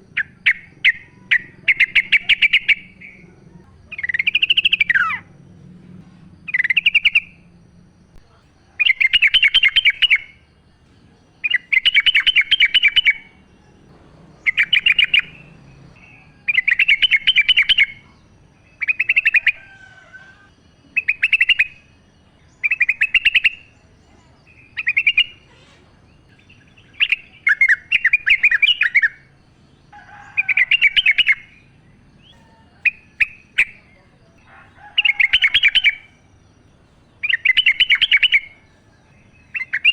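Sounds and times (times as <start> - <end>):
bulbul singing bubbly phrases: 0.0 - 5.4.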